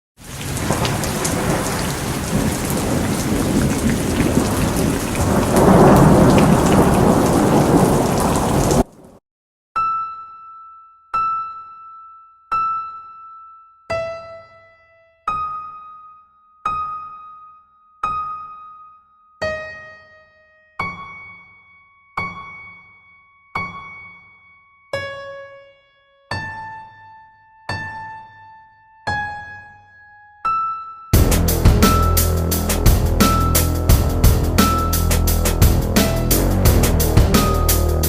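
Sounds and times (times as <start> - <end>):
heavy rain: 0.2 - 9.2, 31.2 - 38.0
thunder rumbling: 0.2 - 9.2, 31.2 - 38.0.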